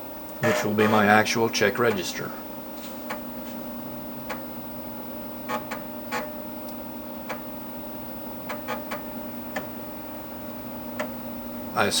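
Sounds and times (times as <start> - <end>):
computer fan hum: 0.0 - 12.0
floppy disk drive clicking: 3.0 - 3.3, 4.2 - 4.6, 5.4 - 7.6, 8.3 - 9.8, 10.9 - 11.2.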